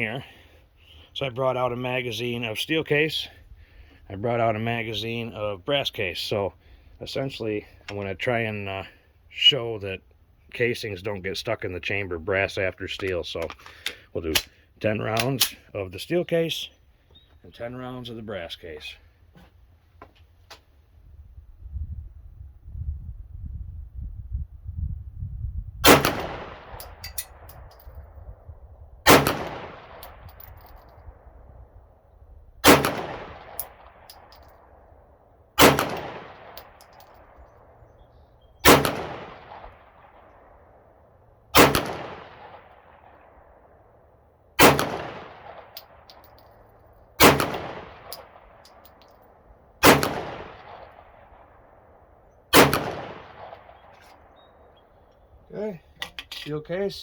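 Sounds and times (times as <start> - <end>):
pistol shots with ringing decay: 25.8 - 27.7, 29.0 - 30.7, 32.6 - 34.8, 35.6 - 40.8, 41.5 - 43.7, 44.6 - 46.3, 47.2 - 49.0, 49.8 - 51.8, 52.5 - 54.5.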